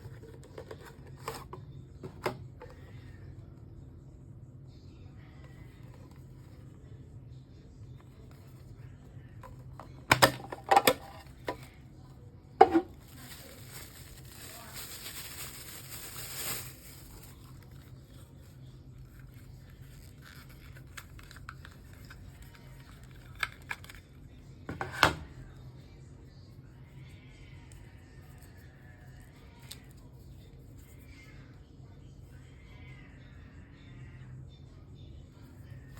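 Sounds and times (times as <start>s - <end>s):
packaging rustling: 12.7s - 17.6s.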